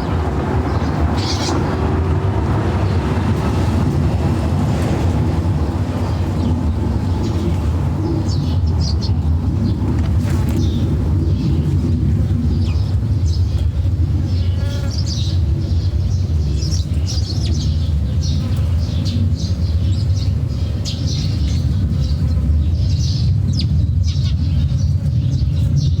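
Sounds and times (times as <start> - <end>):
small birds chirping: 0.0 - 3.6, 5.8 - 26.0
steady low rumble: 0.0 - 14.6.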